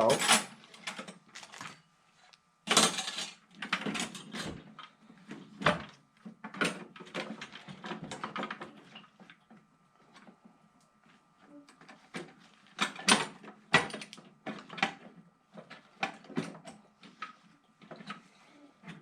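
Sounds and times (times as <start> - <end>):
metal tools clinking and rattling: 2.7 - 3.4.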